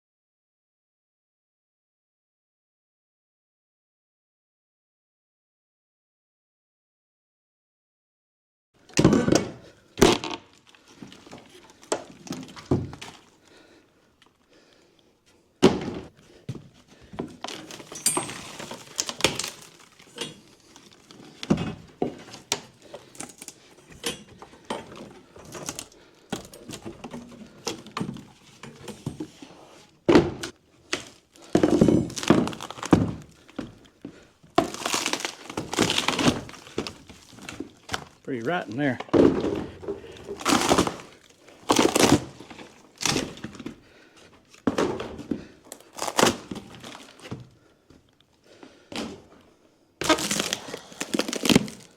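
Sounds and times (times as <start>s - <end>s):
wooden boards thudding and cracking: 8.9s - 13.3s, 17.1s - 23.5s, 30.1s - 38.2s, 38.9s - 43.8s.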